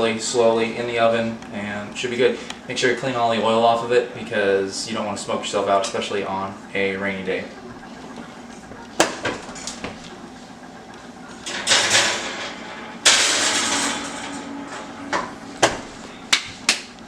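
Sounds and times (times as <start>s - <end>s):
oven rack sliding: 9.0s - 16.3s
loud metal scrape: 11.4s - 16.0s.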